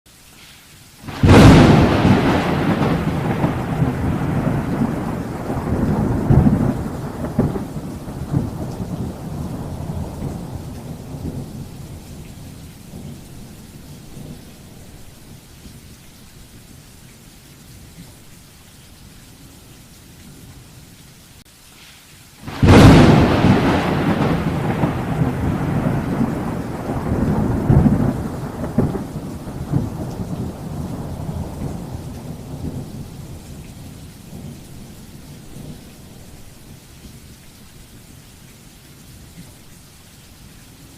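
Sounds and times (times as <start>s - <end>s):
thunder cracking and rumbling: 1.1s - 15.1s, 22.4s - 36.8s.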